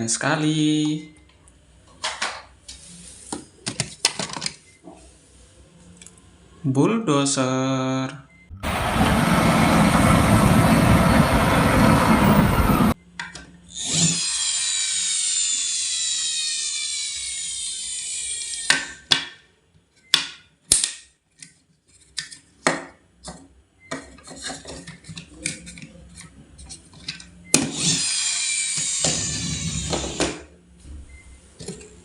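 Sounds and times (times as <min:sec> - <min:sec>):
toy vehicle whining: 0:13.7 - 0:19.0, 0:27.7 - 0:30.4.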